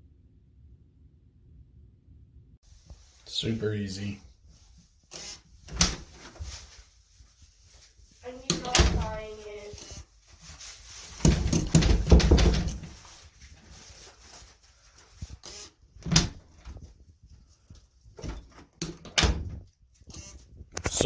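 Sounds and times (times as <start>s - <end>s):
lock clunking and rattling: 5.7s - 6.2s, 11.2s - 12.9s, 16.0s - 16.8s, 18.2s - 19.6s.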